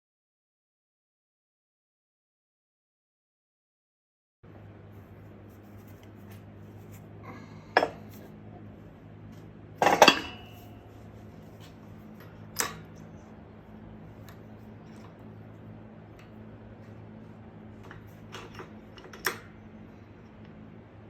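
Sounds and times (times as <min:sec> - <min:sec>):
steady low hum: 0:04.4 - 0:21.0
metal tools clinking: 0:09.8 - 0:10.8.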